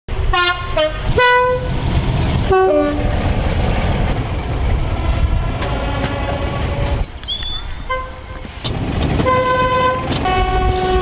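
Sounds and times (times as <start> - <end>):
train running noise: 0.1 - 11.0
two-tone train horn blasts: 0.3 - 1.7, 2.4 - 3.2, 5.0 - 7.0, 7.8 - 11.0.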